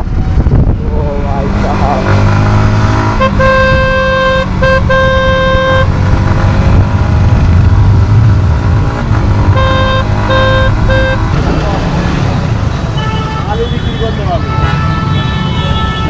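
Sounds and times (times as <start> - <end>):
motorcycle engine running: 0.0 - 14.0
vehicle horn honking: 3.0 - 6.1, 9.4 - 11.6, 12.8 - 16.0.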